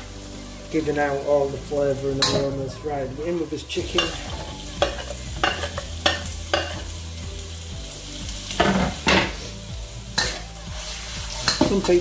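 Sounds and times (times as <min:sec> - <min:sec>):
chicken sizzling in hot oil: 0:00.0 - 0:12.0
spatula scraping a wok: 0:08.5 - 0:12.0.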